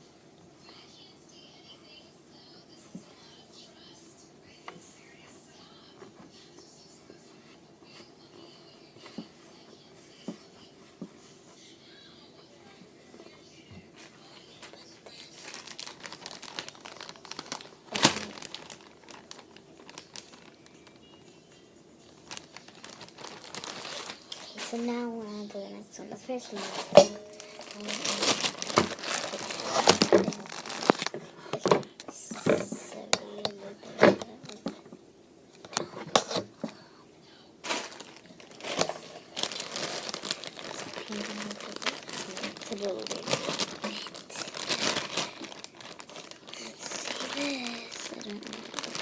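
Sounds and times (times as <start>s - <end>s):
packaging rustling: 14.2s - 21.2s, 22.1s - 25.0s, 26.5s - 34.8s, 37.6s - 49.0s
slime crinkling and crackling: 14.4s - 21.2s, 22.1s - 25.5s, 26.3s - 34.8s, 37.6s - 49.0s.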